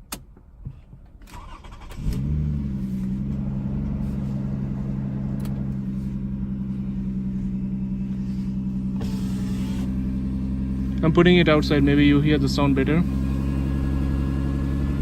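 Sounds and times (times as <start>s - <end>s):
starter cranking engine: 1.3s - 2.5s
loud exhaust drone at idle: 3.4s - 15.0s.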